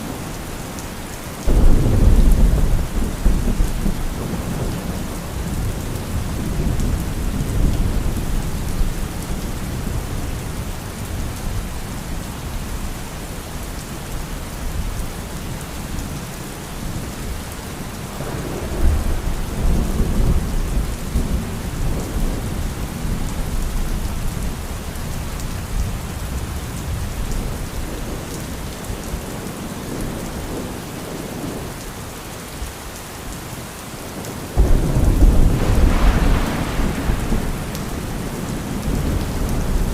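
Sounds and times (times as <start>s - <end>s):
steady rain falling: 0.0s - 39.9s
low rolling thunder: 1.4s - 12.3s, 18.1s - 28.5s, 34.6s - 39.9s.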